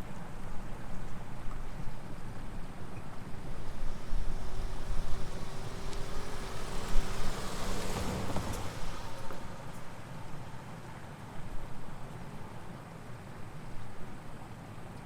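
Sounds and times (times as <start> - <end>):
vehicle passing close by: 3.1 - 12.4.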